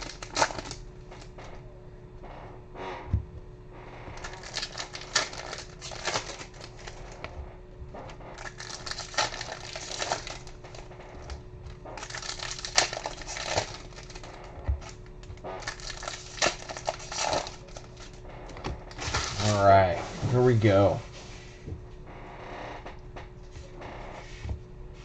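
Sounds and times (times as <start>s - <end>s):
foil packs crinkling and tearing: 0.0s - 1.5s, 4.2s - 7.4s, 8.3s - 20.0s.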